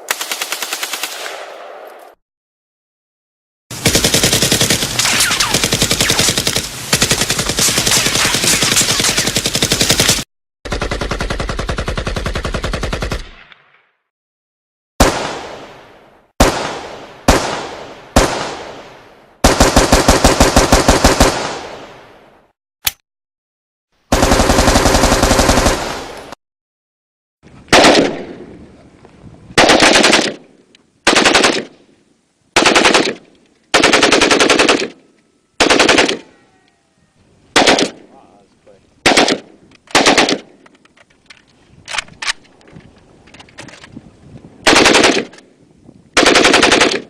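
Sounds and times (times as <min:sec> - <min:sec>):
rifle single shots: 0:39.0 - 0:40.5.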